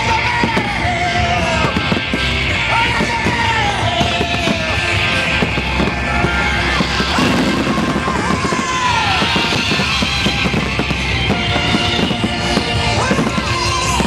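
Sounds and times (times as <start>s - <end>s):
fireworks bangs and crackles: 0.0s - 14.0s
loud rock music: 0.0s - 14.0s.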